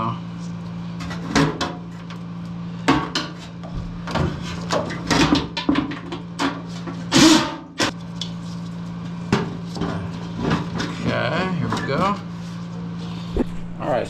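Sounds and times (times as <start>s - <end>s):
steady low hum: 3.6s - 4.8s, 13.1s - 14.0s
metal knocks and clanks: 3.6s - 5.9s.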